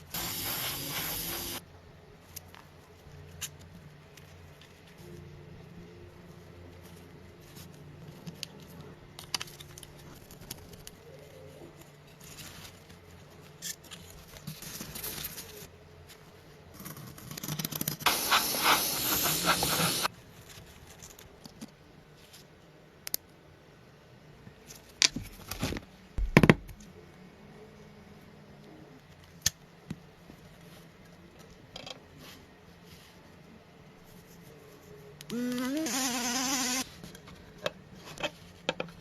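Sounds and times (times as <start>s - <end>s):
loud hiss: 0.0s - 1.6s, 18.0s - 20.1s.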